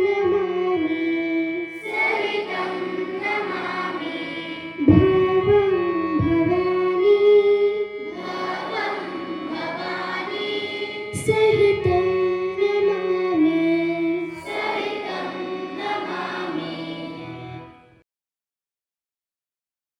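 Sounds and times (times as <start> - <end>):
children singing together: 1.7 - 17.8.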